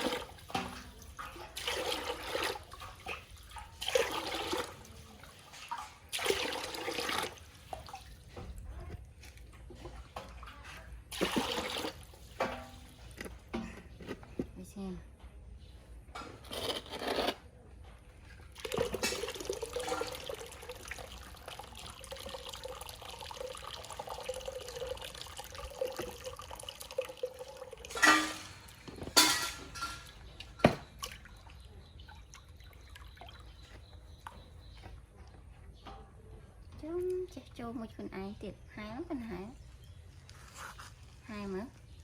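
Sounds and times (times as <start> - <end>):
water splashes: 0.0 - 8.5, 9.3 - 12.9, 18.6 - 34.4
bath water running: 9.9 - 13.0, 18.6 - 31.3.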